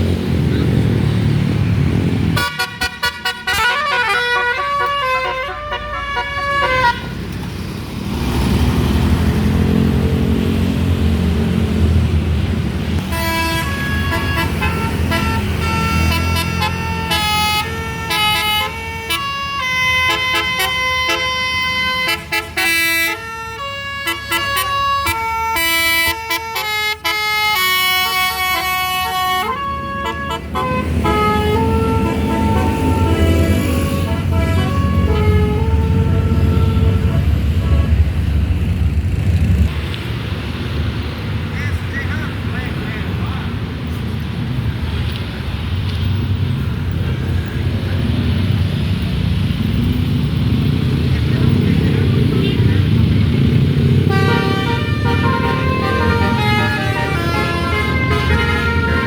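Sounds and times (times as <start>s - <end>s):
multi-tone bus horn melody: 2.3s - 7.4s, 13.0s - 38.3s, 53.8s - 59.0s
low engine rumble: 9.4s - 59.0s.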